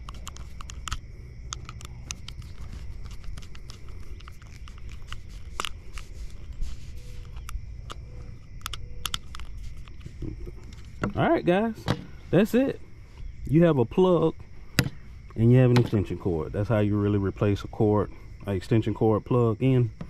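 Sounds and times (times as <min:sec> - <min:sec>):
screwdriver clicks and scrapes: 0:00.0 - 0:11.1.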